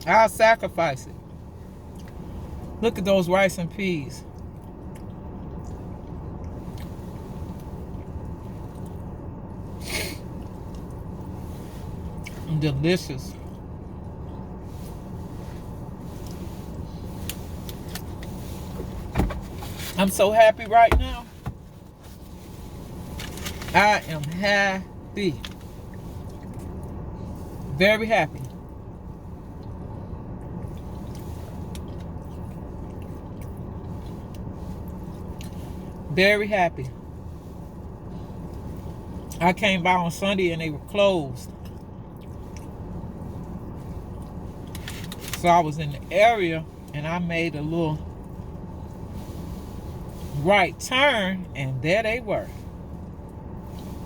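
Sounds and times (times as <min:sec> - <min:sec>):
low rumble inside car: 0:00.0 - 0:54.0
soft chewing: 0:41.5 - 0:45.3.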